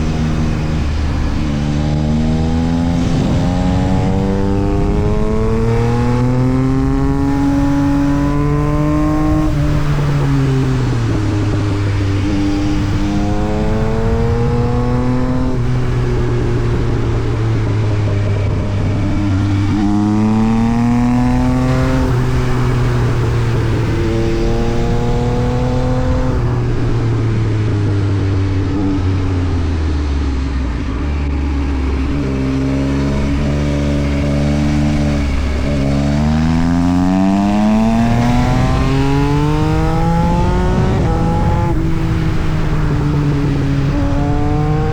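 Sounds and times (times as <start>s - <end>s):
motorcycle engine revving: 0.0s - 44.9s.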